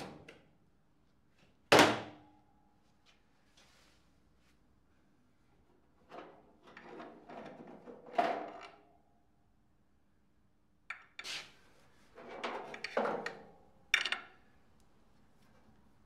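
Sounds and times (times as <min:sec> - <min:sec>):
hard objects clunking and scraping: 0:12.1 - 0:14.3.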